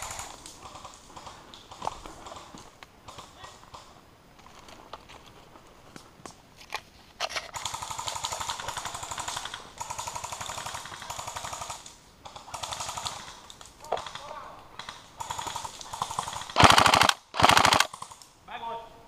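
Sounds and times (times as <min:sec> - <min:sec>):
airsoft gun firing full auto: 0:15.2 - 0:18.2.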